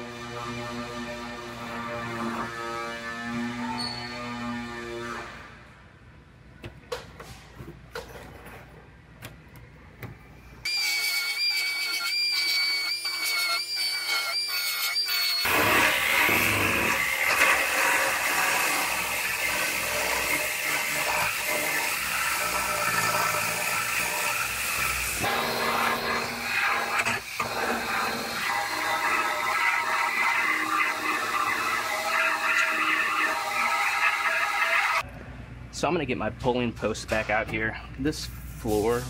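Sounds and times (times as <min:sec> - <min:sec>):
power tool high whine: 0:10.7 - 0:35.0
harsh power tool running noise: 0:15.4 - 0:35.0.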